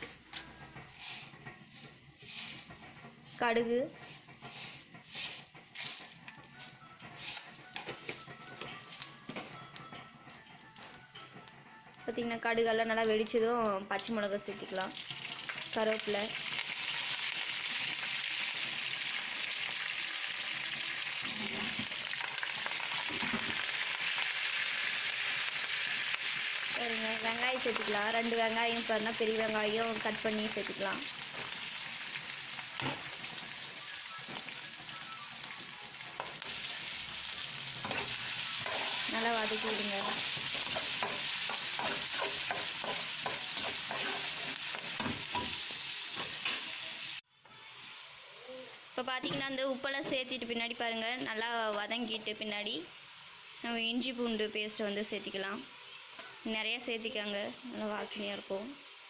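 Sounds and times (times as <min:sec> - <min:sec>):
utensil scraping pan: 0:00.0 - 0:09.0, 0:37.7 - 0:45.6
oil sizzling in a pan: 0:00.0 - 0:59.0.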